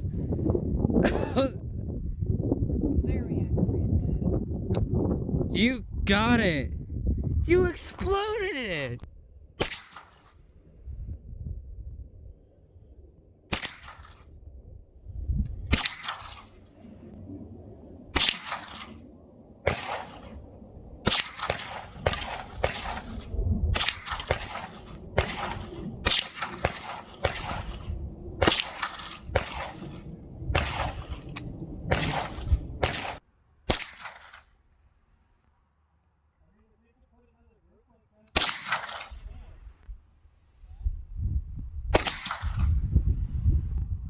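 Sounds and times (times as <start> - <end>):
rifle shots echoing: 9.6 - 10.3, 13.5 - 14.1, 15.7 - 16.7, 18.1 - 19.0, 19.6 - 20.4, 21.1 - 34.5, 38.4 - 39.2, 42.0 - 42.6
low rumble: 21.7 - 33.0.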